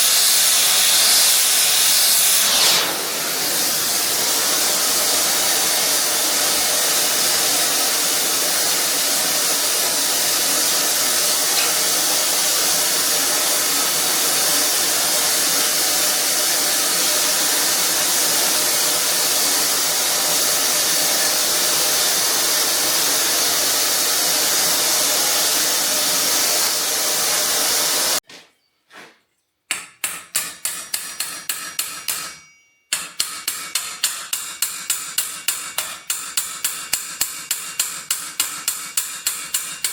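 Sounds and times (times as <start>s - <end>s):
loud rushing hiss: 0.0s - 28.2s.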